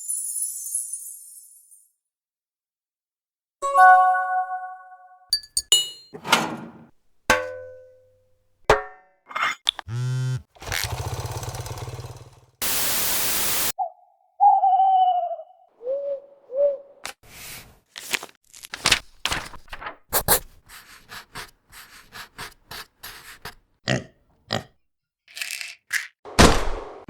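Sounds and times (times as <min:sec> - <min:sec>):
static hiss: 0:12.6 - 0:13.7.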